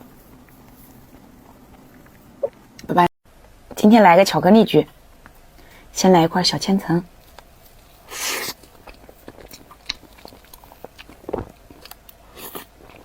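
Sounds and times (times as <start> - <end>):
soft chewing with mouth clicks: 0.0 - 3.7, 7.2 - 13.0
crisp pastry crunch: 7.2 - 13.0.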